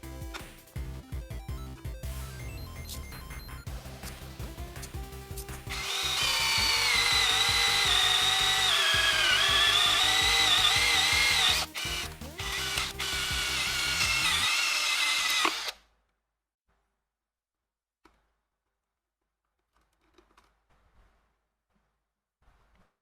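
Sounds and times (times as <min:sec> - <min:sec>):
small electric motor whining: 0:05.7 - 0:15.8.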